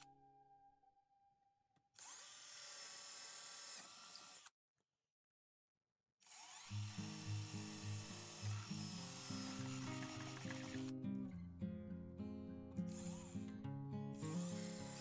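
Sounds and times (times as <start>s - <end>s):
handheld power tool motor: 2.0s - 4.5s, 6.2s - 11.0s, 12.9s - 13.6s, 14.2s - 15.0s.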